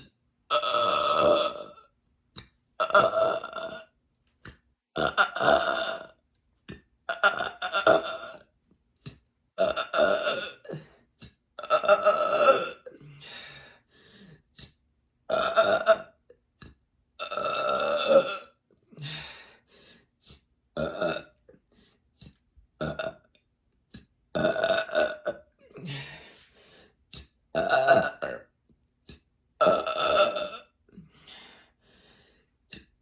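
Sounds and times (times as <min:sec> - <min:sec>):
woman burping: 0:00.5 - 0:01.8, 0:02.8 - 0:03.9, 0:05.0 - 0:06.1, 0:07.1 - 0:08.4, 0:09.6 - 0:10.9, 0:11.6 - 0:13.0, 0:15.3 - 0:16.2, 0:17.2 - 0:18.6, 0:20.8 - 0:21.4, 0:22.8 - 0:23.2, 0:24.4 - 0:26.1, 0:27.6 - 0:28.5, 0:29.6 - 0:30.8.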